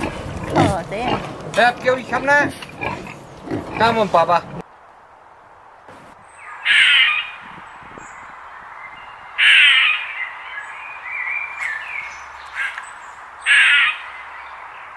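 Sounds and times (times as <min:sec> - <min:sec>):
bird calling loudly: 0:06.2 - 0:14.9.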